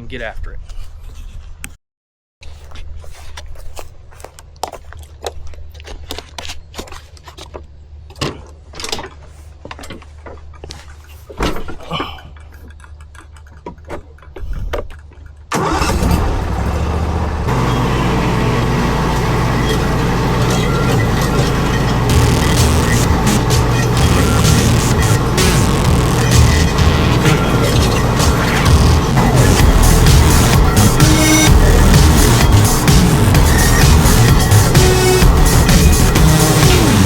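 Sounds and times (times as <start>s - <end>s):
mower engine running: 15.5s - 37.0s
low hum: 15.6s - 37.0s.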